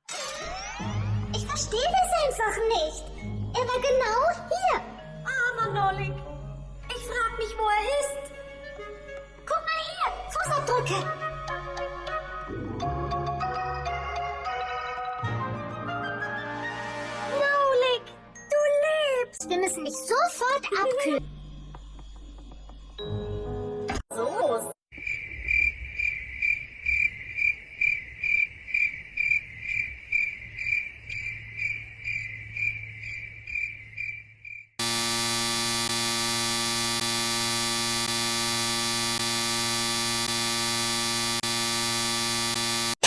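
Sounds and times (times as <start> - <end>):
cricket-like chirping: 24.9 - 34.8
loud steady buzzing tone: 34.8 - 43.0.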